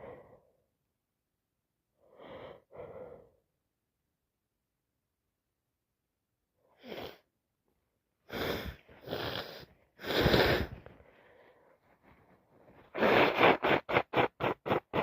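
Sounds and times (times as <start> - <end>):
person sneezing: 12.9 - 15.0.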